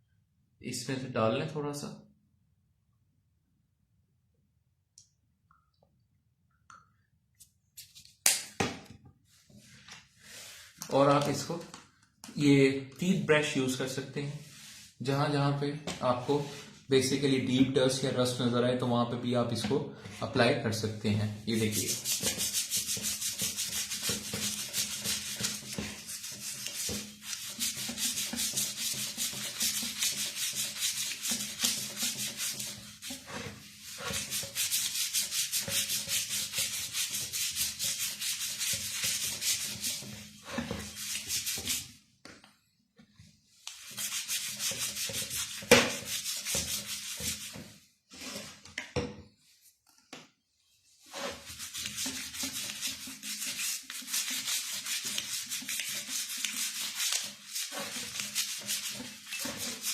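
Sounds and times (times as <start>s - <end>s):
toothbrush scrubbing metal: 21.5s - 42.0s, 43.6s - 47.8s, 51.0s - 59.9s.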